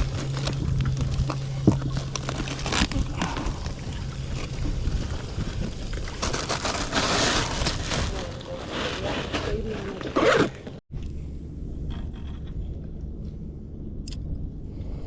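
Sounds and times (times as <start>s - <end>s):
steady low hum: 0.0s - 7.0s, 10.5s - 15.0s
wind buffeting microphone: 0.0s - 8.3s.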